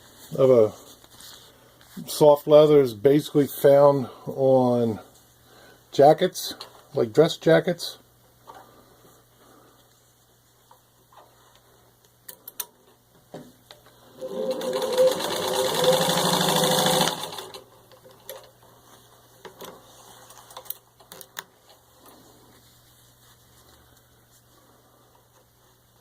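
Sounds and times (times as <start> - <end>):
sewing machine stitching: 14.1 - 17.7.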